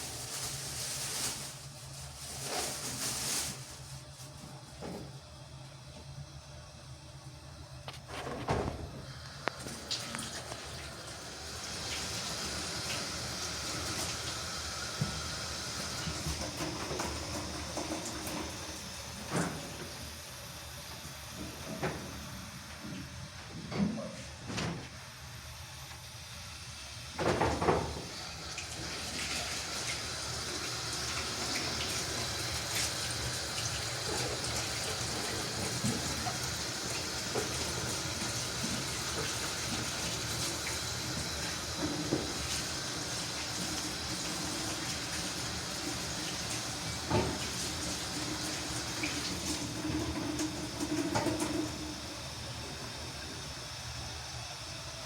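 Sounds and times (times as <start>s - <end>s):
water running: 8.6s - 23.2s, 27.0s - 53.7s.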